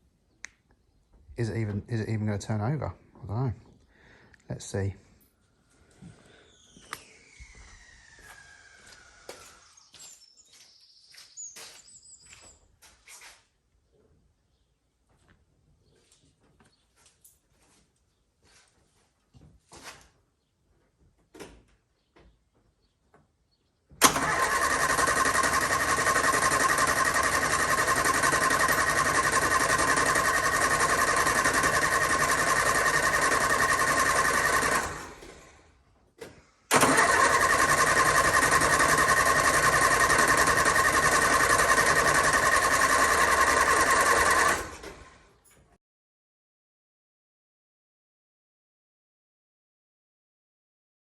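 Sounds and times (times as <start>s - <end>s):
engine cranking on starter motor: 24.0s - 35.7s, 36.7s - 45.3s.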